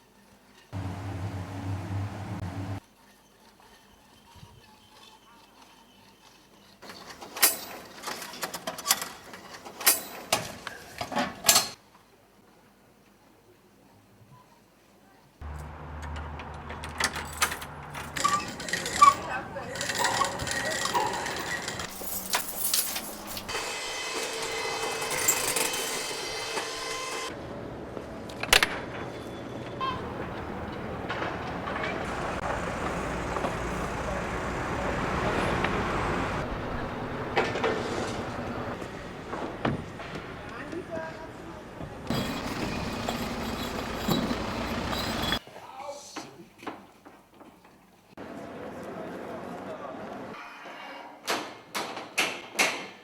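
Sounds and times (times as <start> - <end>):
traffic noise: 0.8 - 2.8, 15.4 - 45.4.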